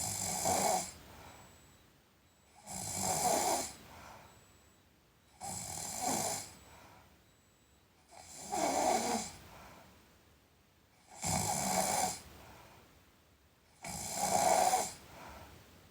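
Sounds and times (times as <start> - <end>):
person snoring: 0.0 - 1.0, 2.6 - 3.8, 5.4 - 6.6, 8.2 - 9.3, 11.1 - 12.2, 13.8 - 15.0
quiet breathing: 0.0 - 10.3, 10.9 - 15.9.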